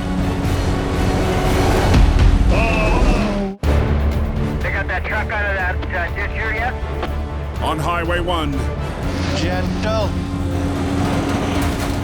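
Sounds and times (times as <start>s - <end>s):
background music: 0.0s - 12.0s
truck engines rumbling: 6.1s - 12.0s
dump truck being dragged: 9.0s - 12.0s.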